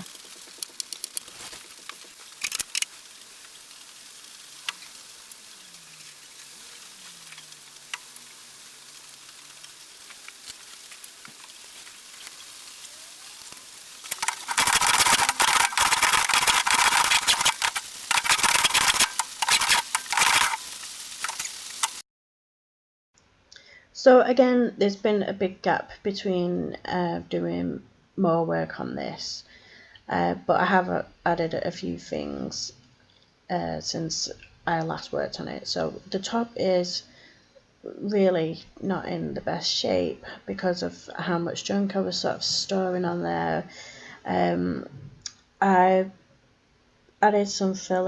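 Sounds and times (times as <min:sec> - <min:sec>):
power tool working wood: 0:04.5 - 0:22.0.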